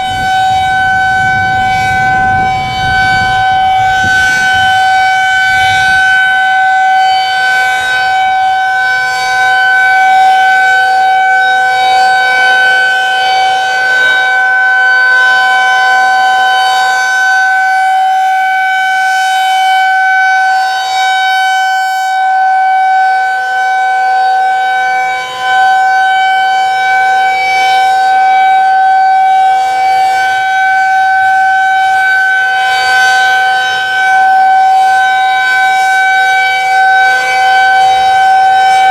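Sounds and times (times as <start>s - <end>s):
tornado siren steady tone: 0.0s - 38.9s.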